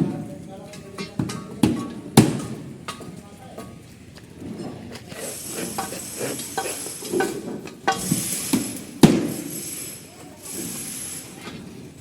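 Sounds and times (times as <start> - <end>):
steady hiss: 5.0 - 12.0.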